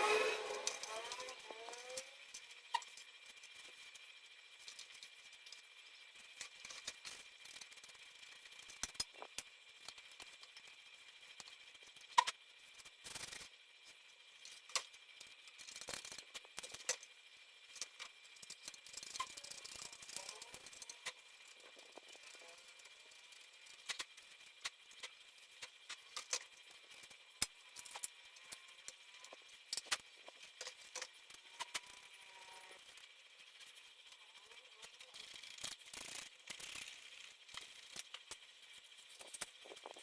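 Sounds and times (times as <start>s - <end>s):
computer parts clicking and rattling: 17.7s - 32.2s, 32.8s - 40.0s.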